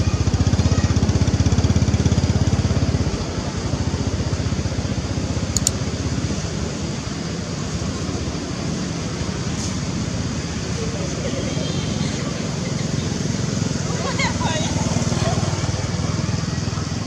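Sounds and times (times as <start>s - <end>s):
high clicks: 5.6s - 5.8s
small engine running: 12.2s - 17.0s.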